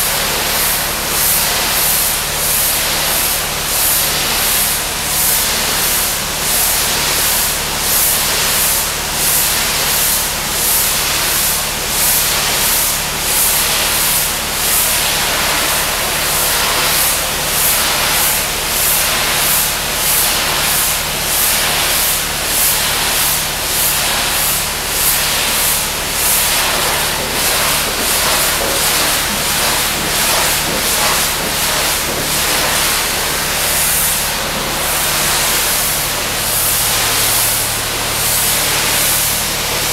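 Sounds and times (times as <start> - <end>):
pressure washer hissing spray: 12.1 - 39.9.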